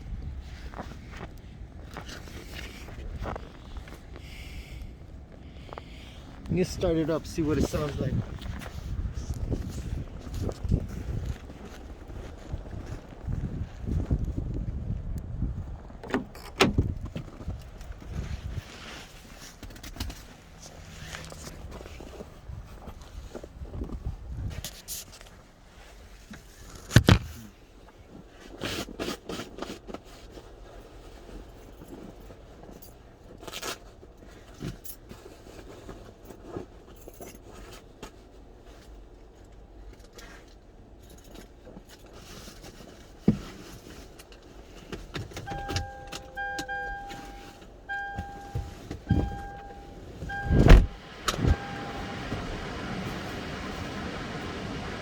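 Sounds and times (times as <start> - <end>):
car door clicks and knocks: 16.0 - 17.1, 45.5 - 47.3, 47.9 - 52.5
electronic chime beeping: 45.5 - 52.2
loud thump: 50.4 - 51.6.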